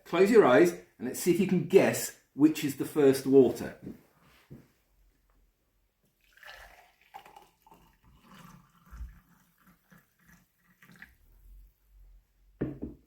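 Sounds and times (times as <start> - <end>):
water poured from jug: 6.1 - 11.7.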